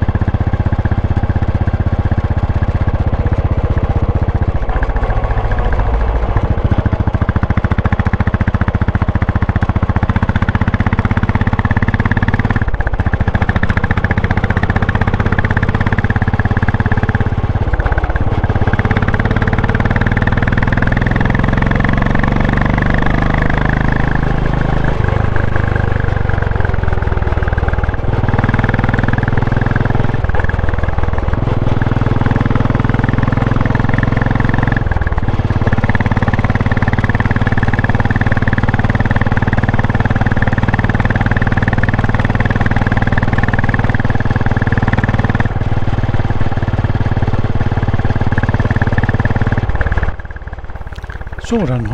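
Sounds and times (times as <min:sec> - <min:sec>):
motorcycle engine pulling: 0:50.7 - 0:51.9.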